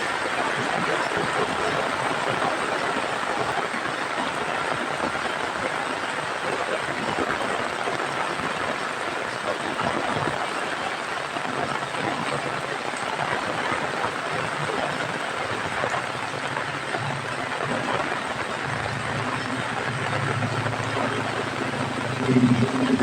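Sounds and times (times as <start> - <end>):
heavy rain falling: 0.0 - 23.0.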